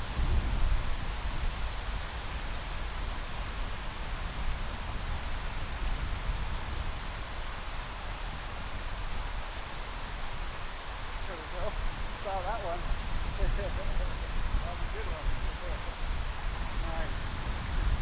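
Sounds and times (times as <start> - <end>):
river water rushing: 7.2 - 18.0.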